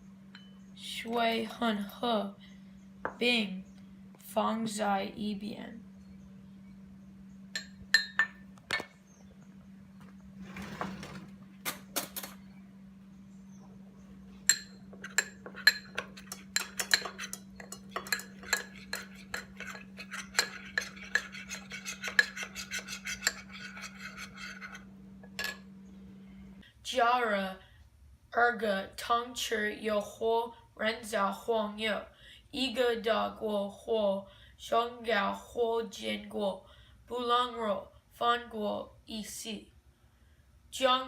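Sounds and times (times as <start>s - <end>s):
steady low hum: 0.0s - 41.0s
spoon clinking against bowl: 7.6s - 8.4s, 14.4s - 25.7s.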